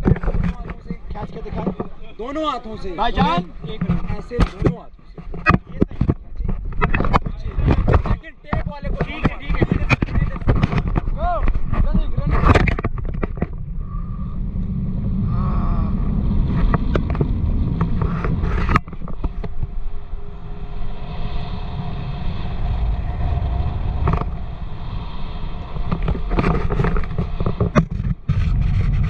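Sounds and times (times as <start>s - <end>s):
wind buffeting microphone: 0.0s - 29.0s
motorboat engine drone: 12.8s - 28.7s.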